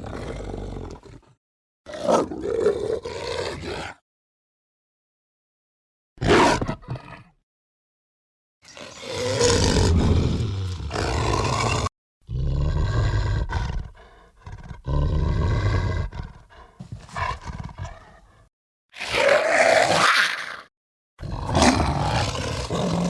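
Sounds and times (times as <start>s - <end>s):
quiet snarls: 8.7s - 23.0s
werewolf roaring: 9.0s - 14.1s, 19.0s - 23.0s.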